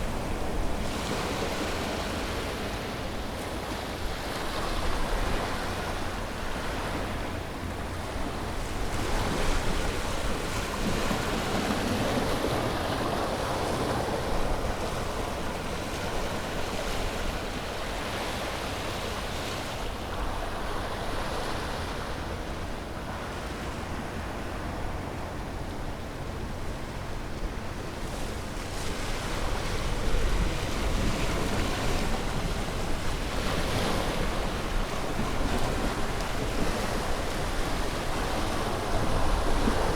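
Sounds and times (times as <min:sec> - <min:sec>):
wind rumble on microphone: 0:00.0 - 0:39.9
sea waves breaking on beach: 0:26.8 - 0:39.9.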